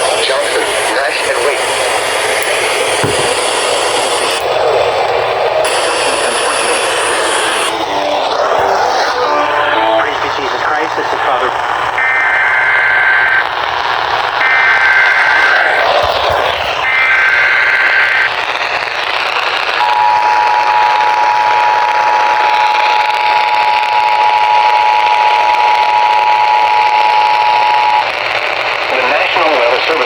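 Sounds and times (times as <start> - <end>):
steady hiss: 0.0 - 4.7, 5.6 - 7.9
warbling data tones: 5.7 - 13.5.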